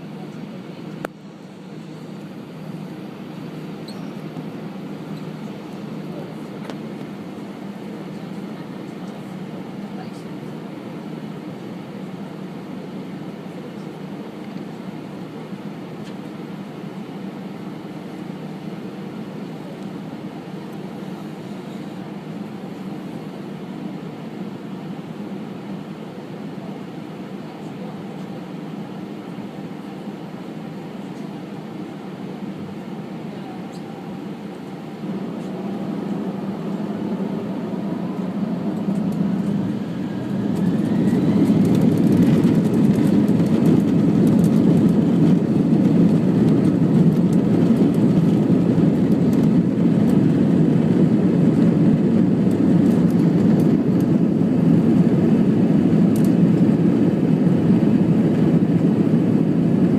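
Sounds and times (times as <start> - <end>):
rumble of takeoff roll: 26.5 - 59.9
jet engines spooling up: 29.5 - 59.9.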